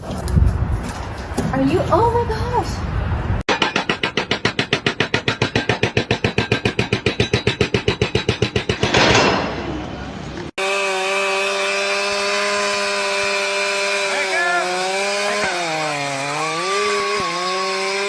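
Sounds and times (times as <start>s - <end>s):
chainsaw engine chugging: 10.6s - 18.0s
chainsaw running at high revs: 10.6s - 18.0s.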